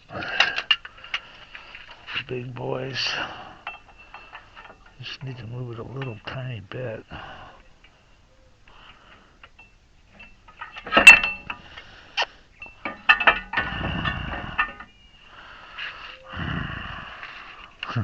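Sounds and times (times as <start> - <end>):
pliers clinking on metal: 9.4 - 11.6.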